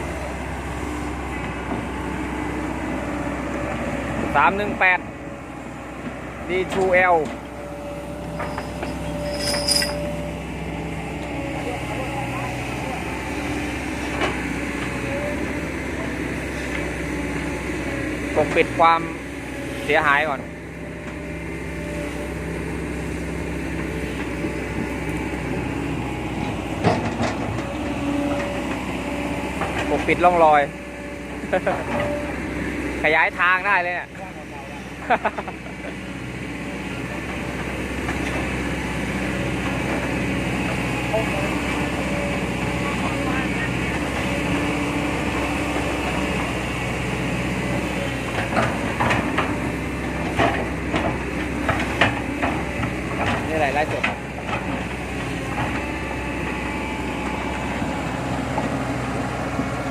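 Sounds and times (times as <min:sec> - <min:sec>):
diesel engine humming: 0:00.0 - 0:59.9
sharp metallic knocks and clanks: 0:08.4 - 0:10.1.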